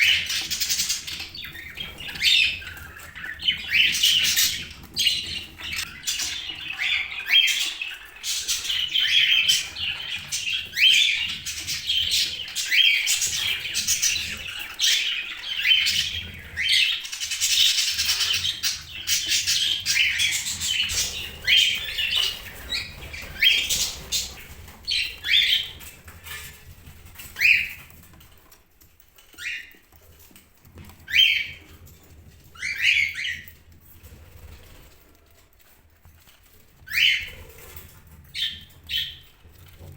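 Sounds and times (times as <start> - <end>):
budgerigars chirping: 0.0 - 27.9, 31.1 - 31.6, 32.6 - 33.5, 36.9 - 37.7.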